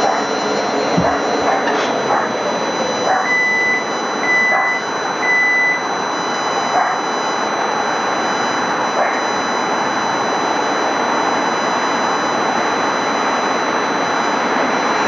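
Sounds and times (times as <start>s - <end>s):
short high beeps: 3.1s - 5.8s.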